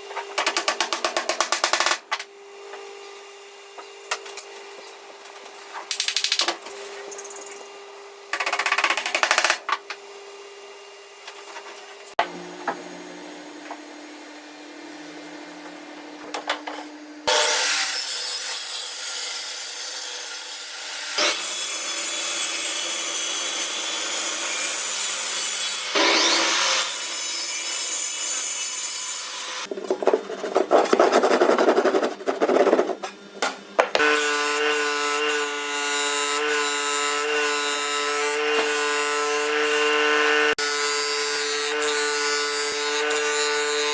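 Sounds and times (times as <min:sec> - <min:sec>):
power tools cutting and sanding wood: 0:17.2 - 0:29.7, 0:34.0 - 0:43.9.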